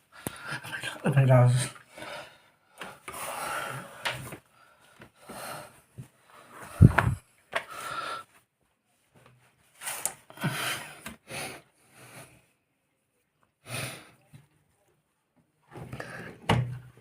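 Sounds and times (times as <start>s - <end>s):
man breathing heavily with effort: 1.9s - 8.3s, 10.3s - 12.4s.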